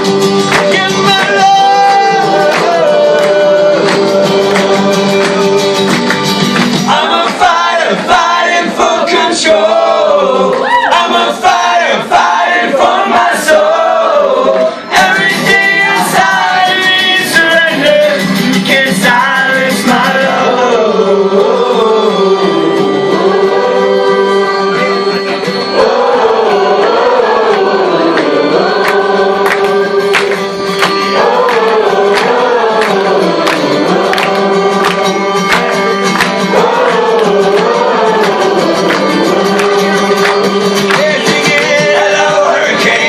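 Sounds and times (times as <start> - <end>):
voices singing: 0.0 - 43.0
sustained chords: 21.2 - 42.8.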